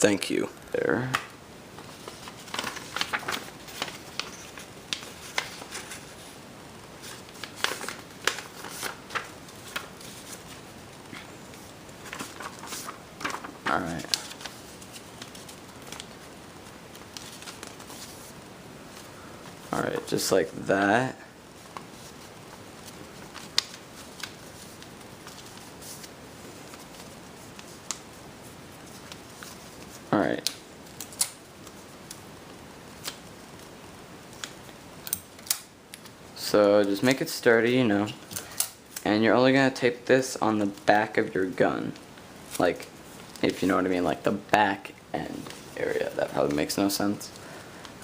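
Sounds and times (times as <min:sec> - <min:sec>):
steady background hiss: 0:00.0 - 0:48.0
paper rustling and clicking: 0:01.1 - 0:06.1, 0:07.0 - 0:18.3, 0:21.6 - 0:28.1, 0:33.0 - 0:33.7
paper clicks: 0:23.2 - 0:26.1.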